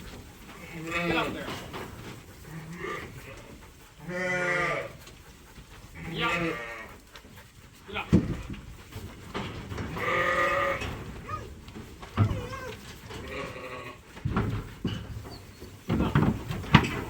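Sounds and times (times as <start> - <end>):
sheep bleating: 0.6 - 1.6, 2.4 - 5.0, 6.0 - 7.0, 9.9 - 11.5, 12.2 - 14.0
dull thuds: 8.0 - 13.2, 14.2 - 17.0.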